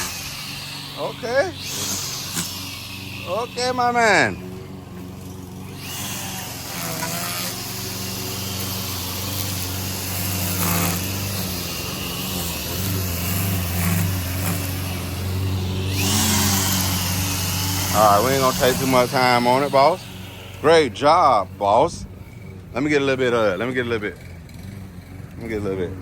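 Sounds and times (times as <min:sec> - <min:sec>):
small gasoline engine running: 0:00.0 - 0:26.0.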